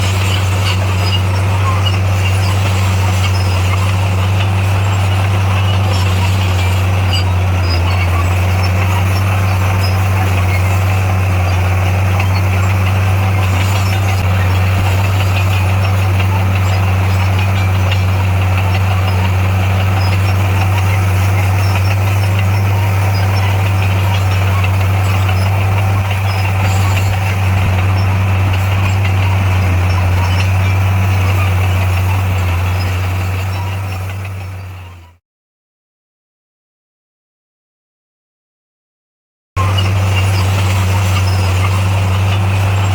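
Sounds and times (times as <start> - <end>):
diesel engine droning: 0.0 - 35.2, 39.6 - 42.9.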